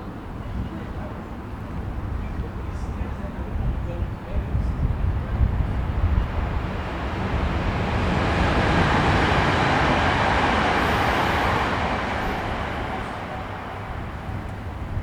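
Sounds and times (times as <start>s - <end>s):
traffic rumble: 5.7s - 15.0s.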